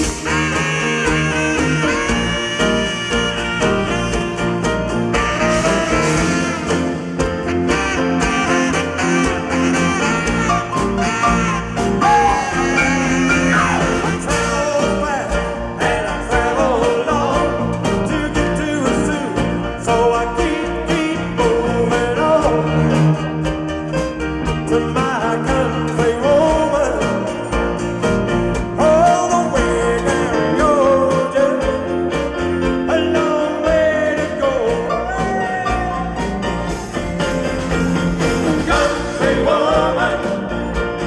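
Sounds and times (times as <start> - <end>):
lead guitar: 0.0 - 15.6
steady drum beat: 0.0 - 33.0, 33.6 - 41.0
bass guitar: 0.0 - 41.0.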